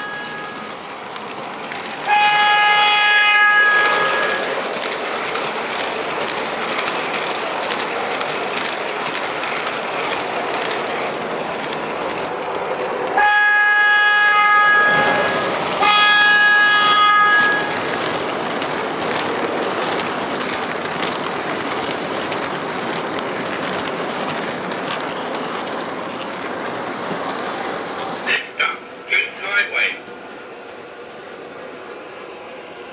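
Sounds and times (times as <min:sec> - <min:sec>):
train horn blasts: 0:00.0 - 0:00.7, 0:02.1 - 0:04.6, 0:13.2 - 0:17.8
model train rumbling on track: 0:00.0 - 0:32.9.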